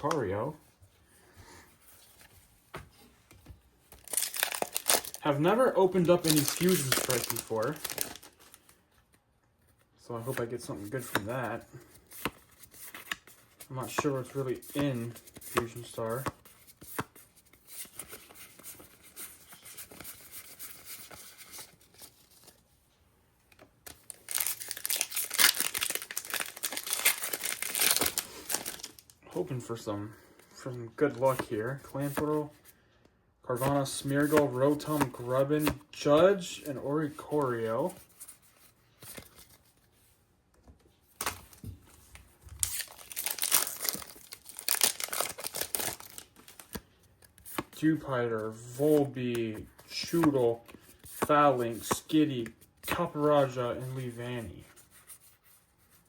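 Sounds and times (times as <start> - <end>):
foil wrapper tearing: 4.0 - 5.3, 6.1 - 8.6, 24.1 - 29.1, 42.6 - 46.7
foil wrapper rustling: 4.0 - 8.7, 24.1 - 29.2, 42.5 - 46.7.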